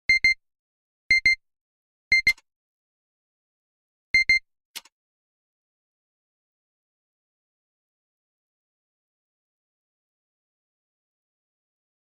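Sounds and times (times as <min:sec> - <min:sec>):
short electronic beeps: 0:00.1 - 0:00.4, 0:01.1 - 0:01.4, 0:02.1 - 0:02.4, 0:04.2 - 0:04.4.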